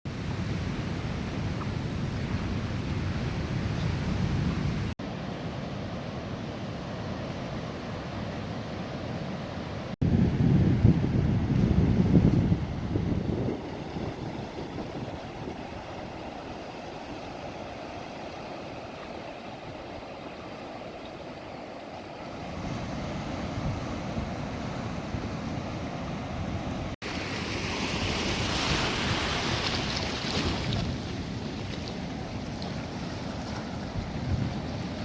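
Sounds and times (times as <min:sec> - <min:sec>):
wind noise on microphone: 0:00.1 - 0:04.9, 0:10.0 - 0:16.6, 0:22.4 - 0:35.0
rushing water: 0:12.2 - 0:35.0.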